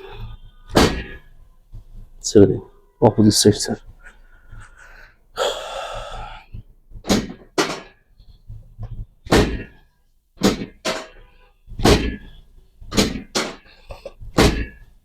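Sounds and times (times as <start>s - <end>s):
breathy rushing noise: 4.5s - 6.5s
sharp thuds: 7.0s - 9.8s, 10.4s - 13.6s, 14.3s - 14.8s.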